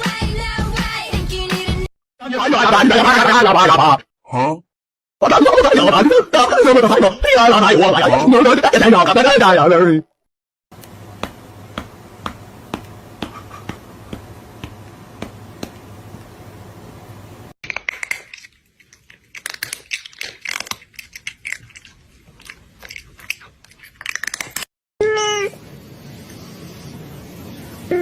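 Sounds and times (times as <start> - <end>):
crunching and chewing: 17.6 - 24.7.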